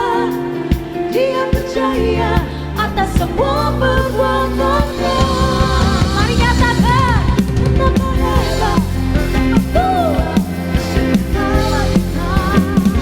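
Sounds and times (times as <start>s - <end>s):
bass: 0.0s - 13.0s
drum kit: 0.0s - 13.0s
sliding melody line: 3.0s - 13.0s.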